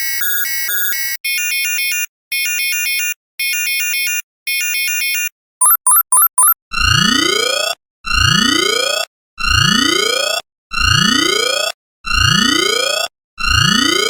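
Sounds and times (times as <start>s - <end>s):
pulsing stepped electronic tones: 5.6s - 6.6s
short sharp beeps: 5.6s - 6.6s
trilling electronic alarm: 5.6s - 6.6s.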